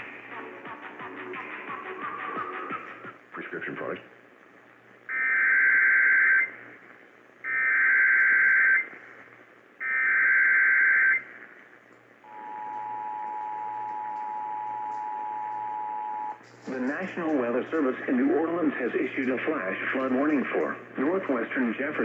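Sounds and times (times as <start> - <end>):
faint radio hiss: 0.0 - 22.0
radio announcement: 3.3 - 4.1, 15.7 - 22.0.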